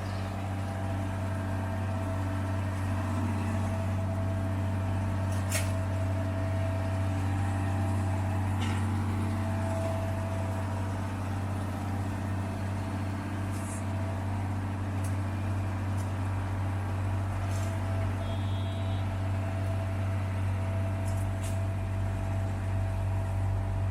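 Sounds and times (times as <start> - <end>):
heavy machinery engine humming: 0.0 - 23.9.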